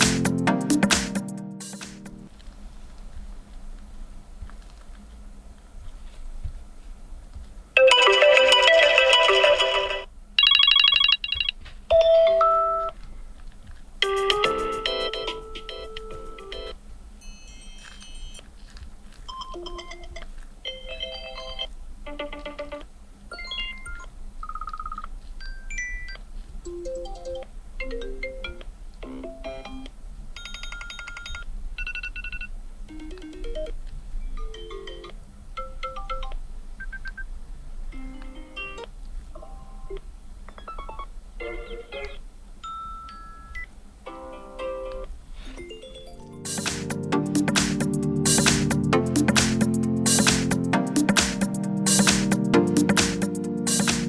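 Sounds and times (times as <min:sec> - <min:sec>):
electronic ringtone melodies: 0:07.8 - 0:12.9, 0:14.0 - 0:18.4, 0:23.3 - 0:29.8, 0:34.4 - 0:36.3, 0:45.6 - 0:54.0
phone ringtones: 0:07.8 - 0:12.9, 0:14.0 - 0:18.4.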